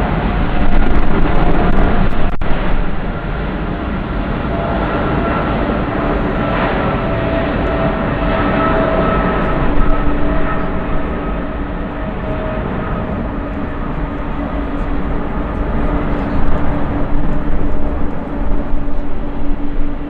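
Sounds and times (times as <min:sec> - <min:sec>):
jet engines at takeoff: 0:00.0 - 0:20.0.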